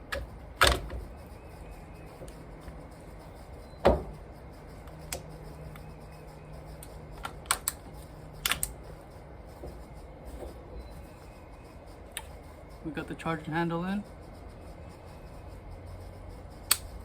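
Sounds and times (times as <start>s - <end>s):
rifle parts clicking and knocking: 7.2s - 8.8s.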